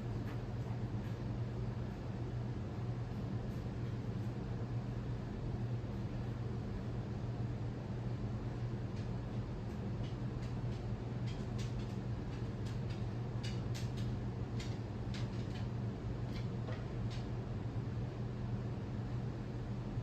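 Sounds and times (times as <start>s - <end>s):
low electrical hum: 0.0s - 20.0s
light clicks and ticks: 8.9s - 17.3s.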